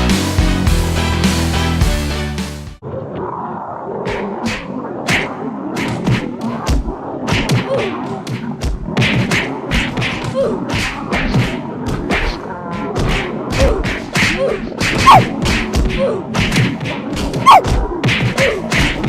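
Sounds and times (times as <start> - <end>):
cartoon fight thumps and whacks: 4.1 - 19.0.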